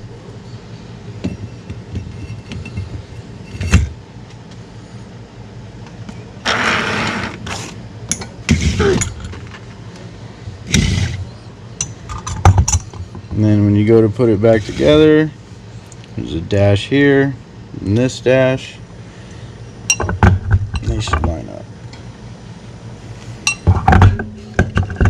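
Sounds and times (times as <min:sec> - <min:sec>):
steady low hum: 0:00.0 - 0:25.0
metal rubbing scrape: 0:06.4 - 0:07.8, 0:10.7 - 0:11.3, 0:14.4 - 0:15.2
metal parts clunking: 0:07.5 - 0:09.7.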